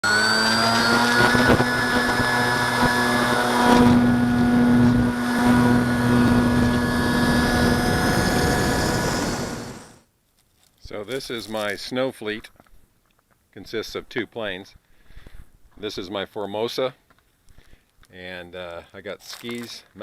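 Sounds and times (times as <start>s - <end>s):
model airplane motor whine: 0.0s - 10.0s.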